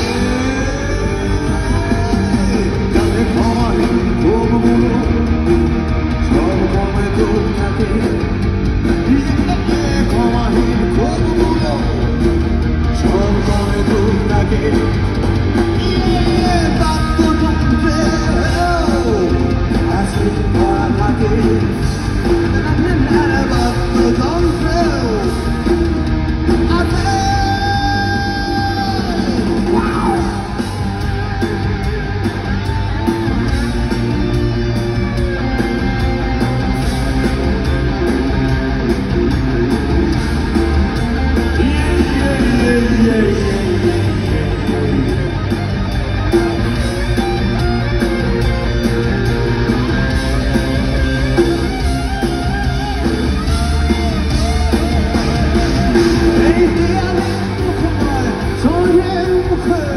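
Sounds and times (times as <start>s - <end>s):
person singing: 0.0s - 5.3s, 41.5s - 45.4s, 55.8s - 59.9s
rock band playing live: 0.0s - 59.9s.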